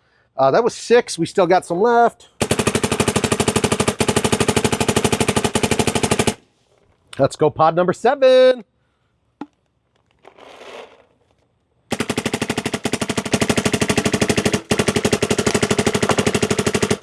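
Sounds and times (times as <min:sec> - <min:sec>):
paintball marker firing: 0:13.2 - 0:17.0.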